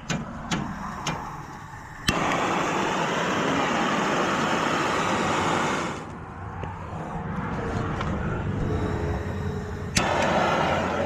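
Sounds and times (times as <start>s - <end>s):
pressurised gas hissing: 0.0s - 6.1s, 9.2s - 11.0s.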